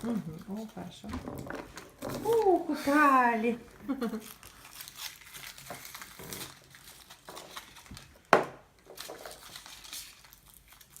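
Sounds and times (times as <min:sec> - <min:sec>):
foil and plastic crinkling: 0:00.0 - 0:11.0.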